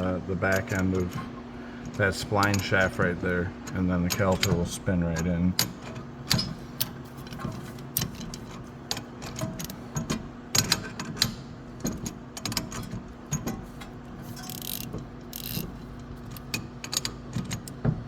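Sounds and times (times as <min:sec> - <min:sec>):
metallic clicks of hand tools: 0:14.4 - 0:15.7.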